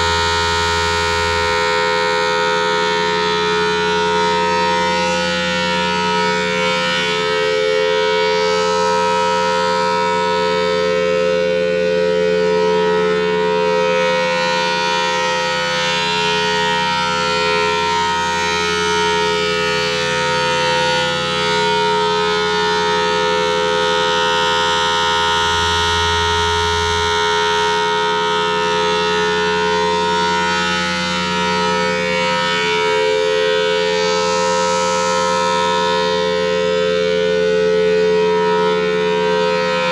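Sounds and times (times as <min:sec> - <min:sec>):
tornado siren: 0:00.0 - 0:39.9.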